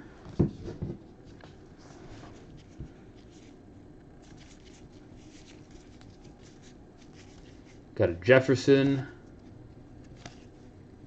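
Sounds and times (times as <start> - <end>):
trading cards rubbing: 2.2 - 3.6, 4.2 - 8.0.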